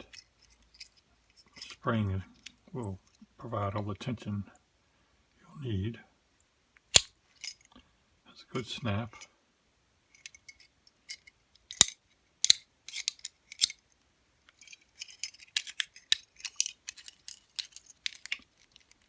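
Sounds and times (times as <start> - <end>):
padlock metal clicks and snaps: 6.9 - 7.6, 10.2 - 13.8, 14.5 - 19.0.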